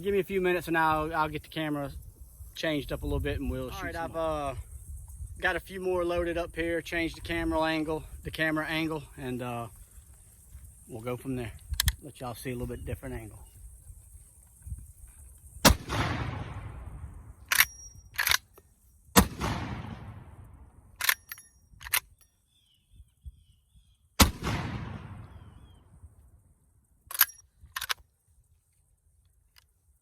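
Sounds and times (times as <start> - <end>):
shotgun shots: 15.6 - 16.9, 19.2 - 20.4, 24.2 - 25.6
rolling echo: 15.6 - 17.3, 19.2 - 20.7, 24.2 - 25.8
shotgun lever clacks: 17.5 - 18.6, 21.0 - 22.3, 27.1 - 28.0.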